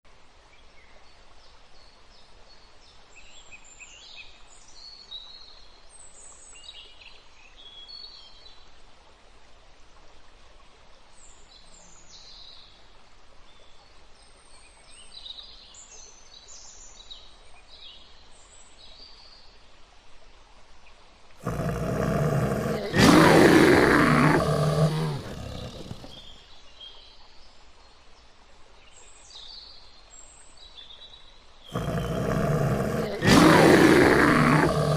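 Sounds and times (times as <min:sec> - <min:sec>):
animal giving low roar: 0:21.4 - 0:26.3, 0:31.7 - 0:34.9
birds chirping: 0:21.4 - 0:26.3, 0:31.7 - 0:34.9.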